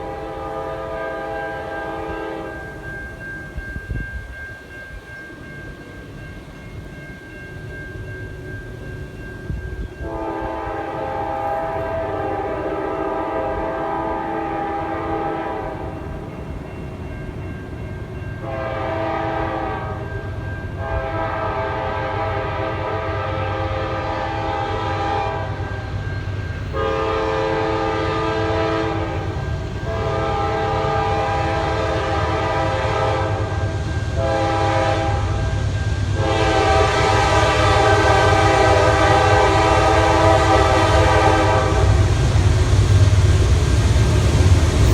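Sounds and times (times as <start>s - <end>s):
locomotive horn blasts: 0.0s - 2.8s, 10.0s - 16.1s, 18.4s - 20.1s, 20.8s - 26.0s, 26.7s - 35.6s, 36.2s - 42.0s
diesel locomotive rumble: 20.8s - 44.9s.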